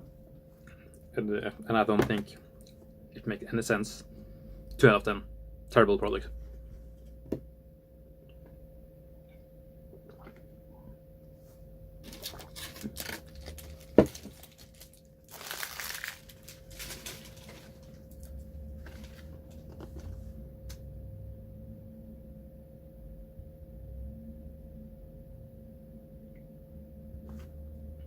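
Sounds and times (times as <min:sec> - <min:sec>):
faint steady hum: 0:00.0 - 0:28.0
plastic wrappers crinkling: 0:12.0 - 0:19.7.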